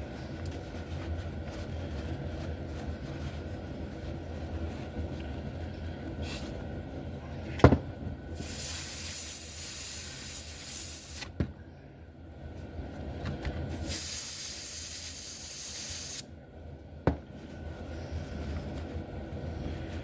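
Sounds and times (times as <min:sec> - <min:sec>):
compressed air blasts: 0:08.4 - 0:11.3, 0:13.8 - 0:16.2.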